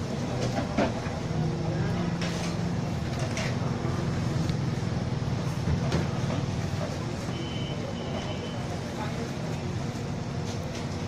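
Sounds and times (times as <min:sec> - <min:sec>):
low mechanical hum: 0:00.0 - 0:11.0.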